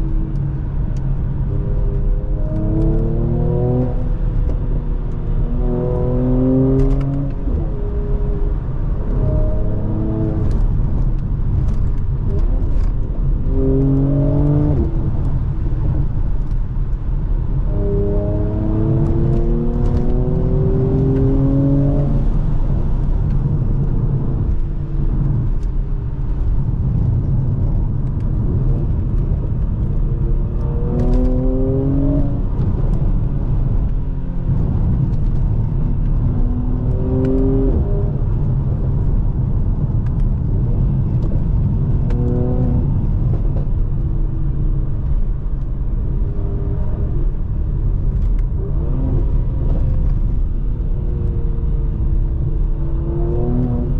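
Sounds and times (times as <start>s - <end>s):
car engine revving: 0.0s - 44.0s, 46.0s - 53.9s
road and tyre rumble: 0.0s - 53.9s.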